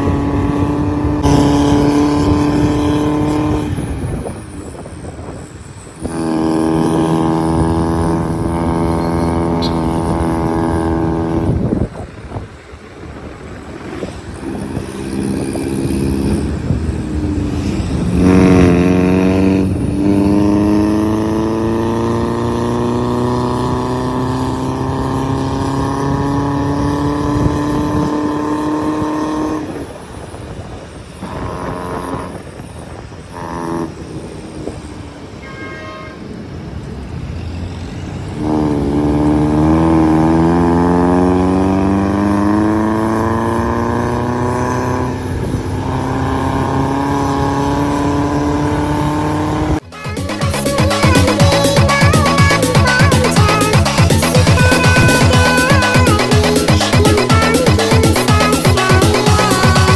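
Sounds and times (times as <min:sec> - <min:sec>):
engine accelerating: 0:00.0 - 0:34.7, 0:38.2 - 0:59.9
vehicle engine running: 0:45.4 - 0:59.9.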